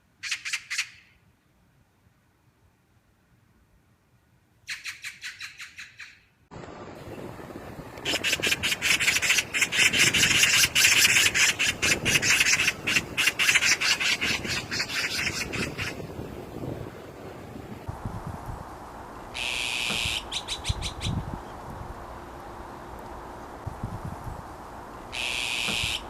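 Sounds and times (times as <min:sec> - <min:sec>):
magpies chattering: 0:19.4 - 0:21.2, 0:25.1 - 0:26.0.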